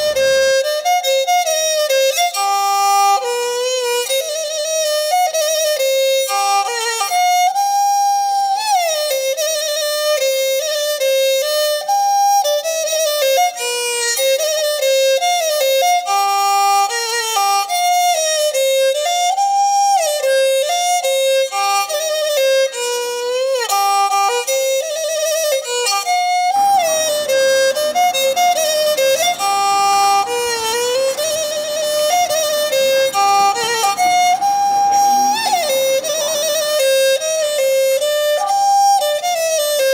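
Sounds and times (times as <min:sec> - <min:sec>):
melody with sliding notes: 0:25.2 - 0:39.9.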